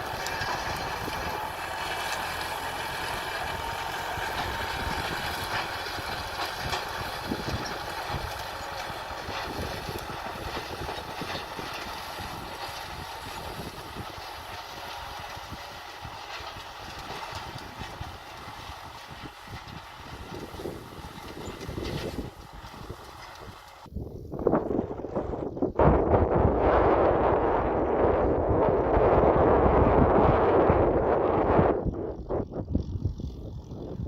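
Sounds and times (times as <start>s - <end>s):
tractor diesel engine rumbling: 0.0s - 24.1s.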